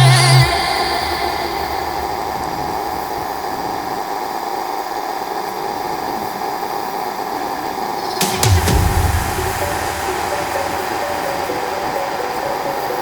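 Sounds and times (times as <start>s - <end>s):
low thump: 8.2s - 13.0s.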